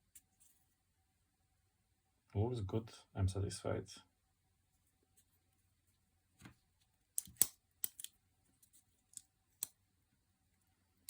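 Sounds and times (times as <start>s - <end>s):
pocket knife metallic clicks: 7.2s - 8.1s.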